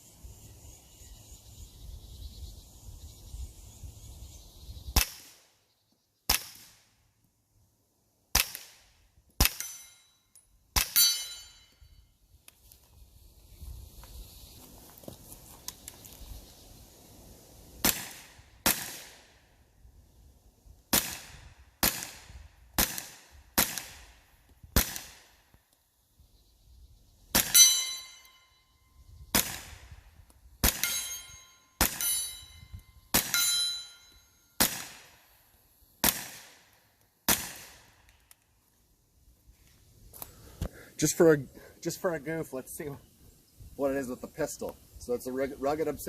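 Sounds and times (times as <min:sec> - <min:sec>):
steel target clanging: 0:09.4 - 0:10.2, 0:10.8 - 0:11.8, 0:27.5 - 0:28.5, 0:30.7 - 0:32.6, 0:33.2 - 0:34.4
gunshots: 0:17.8 - 0:19.3, 0:24.8 - 0:25.3, 0:34.6 - 0:35.2, 0:36.0 - 0:36.6, 0:37.3 - 0:37.9.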